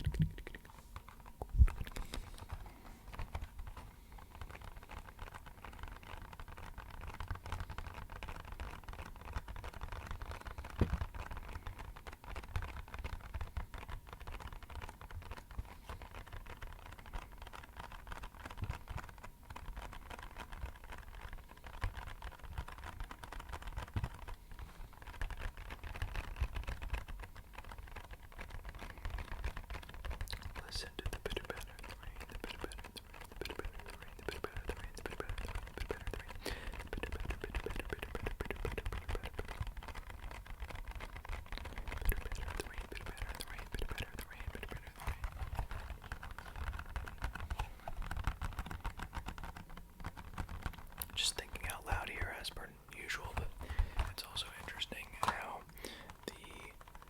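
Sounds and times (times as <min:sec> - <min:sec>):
fingertips tapping on box: 0:25.0 - 0:57.0.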